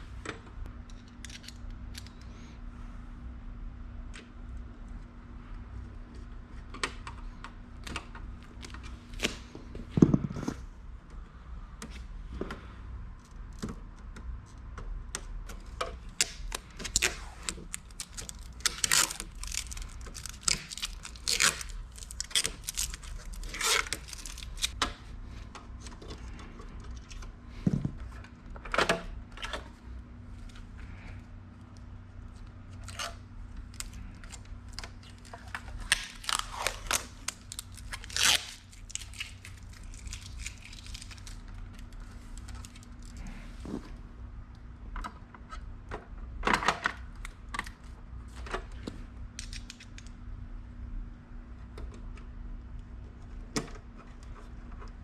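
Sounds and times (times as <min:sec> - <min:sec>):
plastic packaging rustling: 0:16.0 - 0:24.8, 0:32.8 - 0:43.6.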